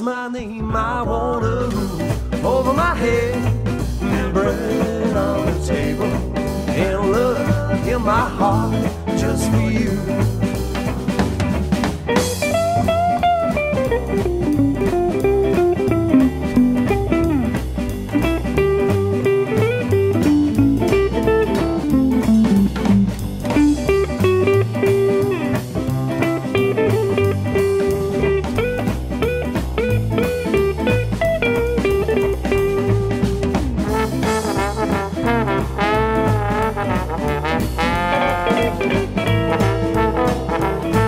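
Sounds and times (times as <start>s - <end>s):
drum kit swing beat: 0.6s - 41.0s
electric guitar solo: 12.1s - 17.6s, 18.2s - 33.8s.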